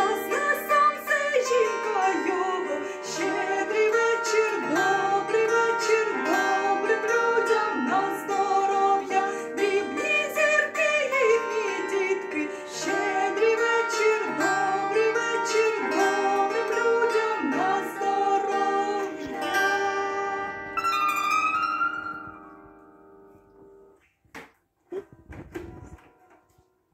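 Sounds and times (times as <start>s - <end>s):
woman singing a folk carol: 0.0s - 20.9s
plucked string accompaniment: 0.0s - 26.7s.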